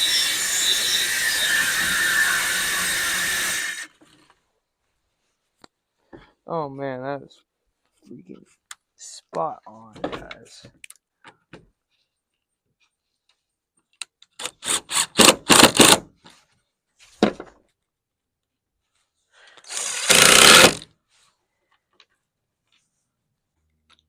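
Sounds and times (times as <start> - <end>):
power tool trigger bursts: 14.4 - 16.0, 19.6 - 20.9.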